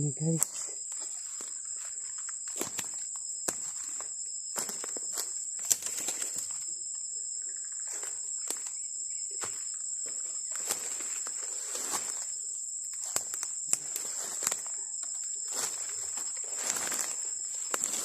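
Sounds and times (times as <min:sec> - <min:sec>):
high-pitched insect drone: 0:00.0 - 0:18.0
footsteps crunching through undergrowth: 0:00.5 - 0:06.7, 0:09.4 - 0:12.4, 0:13.0 - 0:18.0
twig snapping: 0:12.9 - 0:14.6.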